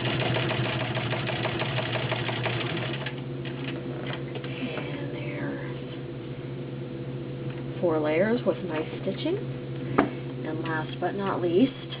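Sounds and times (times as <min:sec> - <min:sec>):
sewing machine stitching leather: 0:00.0 - 0:03.7
electric motor hum: 0:00.0 - 0:12.0.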